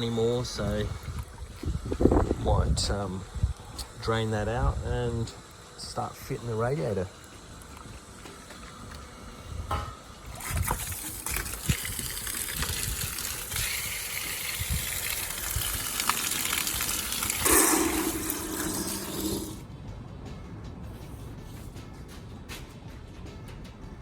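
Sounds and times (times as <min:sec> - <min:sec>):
water pouring and splashing: 0:00.0 - 0:02.4, 0:06.7 - 0:09.0, 0:10.2 - 0:19.6.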